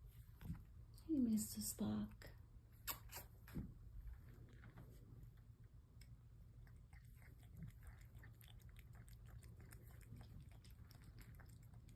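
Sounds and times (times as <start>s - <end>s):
cat chewing: 5.4s - 11.9s.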